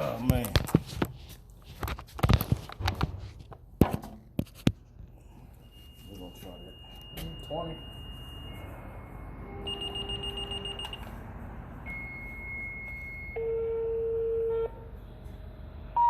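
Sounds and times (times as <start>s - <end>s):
alert tone beeps: 5.7s - 11.0s.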